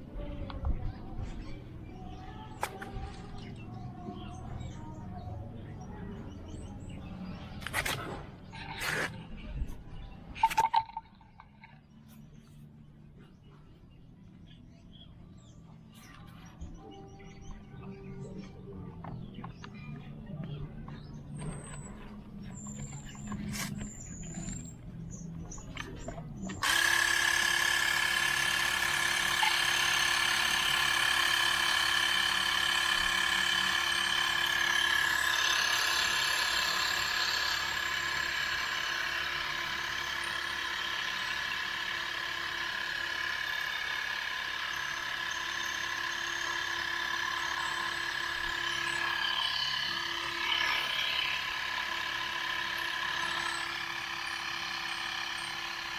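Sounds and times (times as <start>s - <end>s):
electric tire inflator running: 6.2s - 9.2s, 21.0s - 55.9s.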